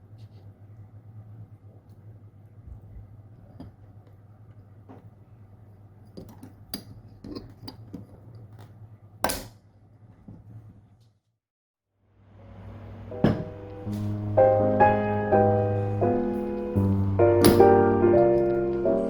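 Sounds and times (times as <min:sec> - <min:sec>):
tableware clinking: 0:13.2 - 0:14.2, 0:16.5 - 0:19.0.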